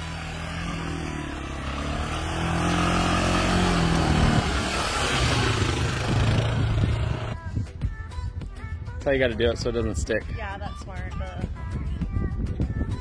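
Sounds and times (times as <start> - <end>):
vehicle engine revving: 0.0 - 7.4.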